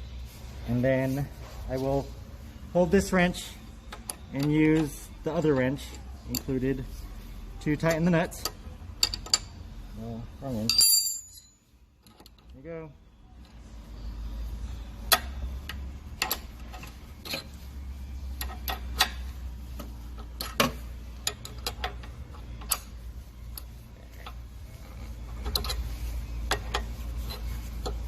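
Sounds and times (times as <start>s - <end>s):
metal wrenches clinking: 7.7s - 9.6s, 10.6s - 12.5s, 15.1s - 17.6s, 18.3s - 19.3s, 20.1s - 28.0s.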